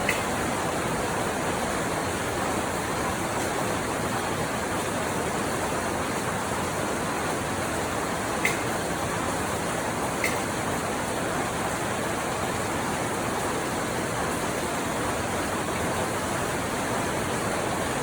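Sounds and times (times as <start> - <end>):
heavy rain falling: 0.0 - 18.0.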